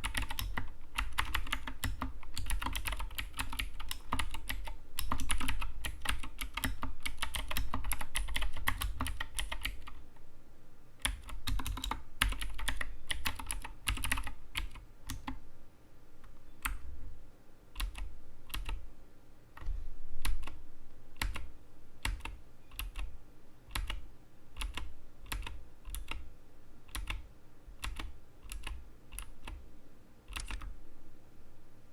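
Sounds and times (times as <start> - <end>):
mechanical keyboard typing: 0.0 - 10.0, 11.0 - 15.4, 17.8 - 18.8, 19.6 - 20.6, 21.2 - 23.1, 23.7 - 24.0, 24.6 - 26.3, 26.9 - 27.2, 27.8 - 29.6, 30.3 - 30.7.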